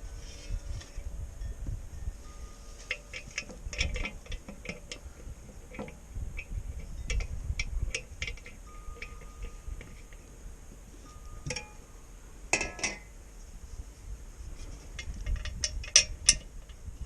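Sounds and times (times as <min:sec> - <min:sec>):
faint ringing of metal: 0:00.0 - 0:13.3
metallic clicks of hand tools: 0:02.9 - 0:10.2, 0:15.0 - 0:16.8.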